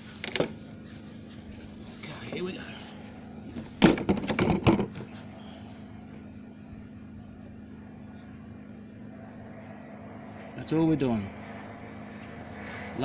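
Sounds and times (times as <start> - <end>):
steady low hum: 0.0 - 13.0
tools knocking and clattering: 3.8 - 5.1.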